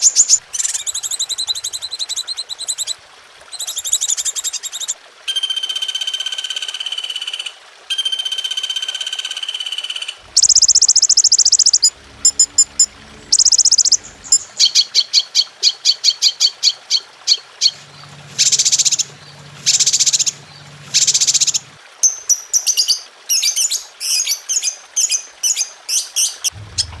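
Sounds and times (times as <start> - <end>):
songbird chirping: 0.0 - 27.0
buzzy bird trills: 7.9 - 24.3.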